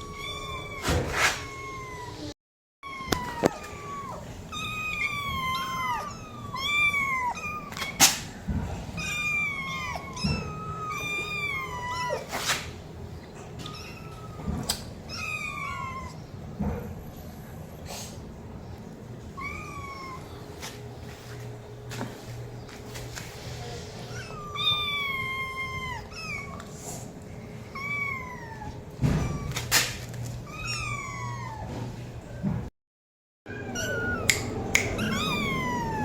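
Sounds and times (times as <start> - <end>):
cat meowing: 0.0 - 8.1, 9.0 - 12.4, 13.6 - 16.2, 19.4 - 20.4, 24.1 - 26.7, 27.7 - 29.8, 30.4 - 31.7, 33.5 - 36.0.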